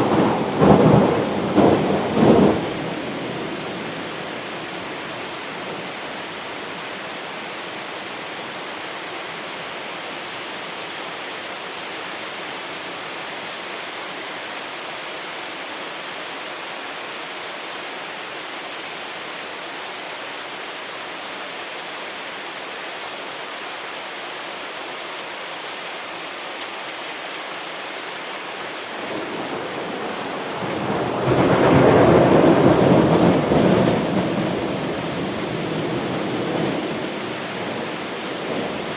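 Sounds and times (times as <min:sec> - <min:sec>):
thunder rumbling: 0:00.0 - 0:04.0, 0:29.0 - 0:38.9
heavy rain hissing: 0:00.0 - 0:38.9.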